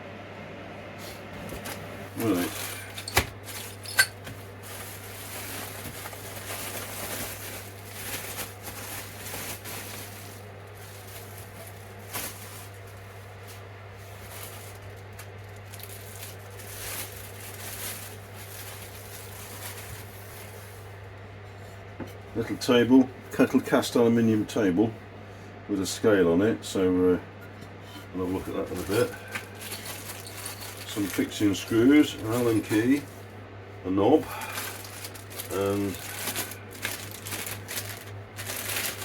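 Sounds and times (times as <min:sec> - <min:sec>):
steady low hum: 0:00.0 - 0:39.0
packaging rustling: 0:01.4 - 0:20.8, 0:28.2 - 0:33.3, 0:34.2 - 0:39.0.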